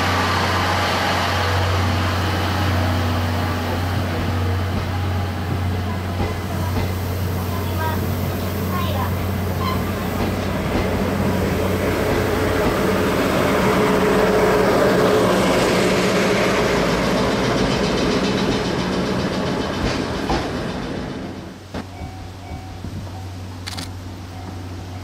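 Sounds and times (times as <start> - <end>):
train passing: 0.0 - 25.0.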